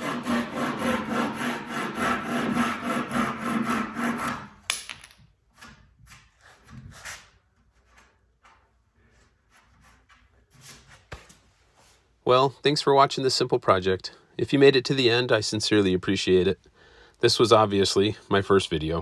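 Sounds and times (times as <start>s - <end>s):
hand saw cutting wood: 0.0s - 4.6s
faint handling and rubbing: 6.2s - 12.3s.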